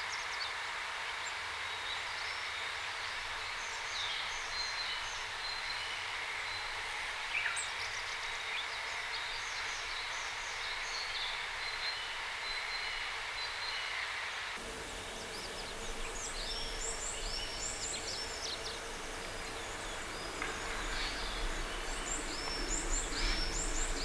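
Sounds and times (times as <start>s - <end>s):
birds chirping and twittering: 14.6s - 24.0s
outdoor background hiss: 14.6s - 24.0s.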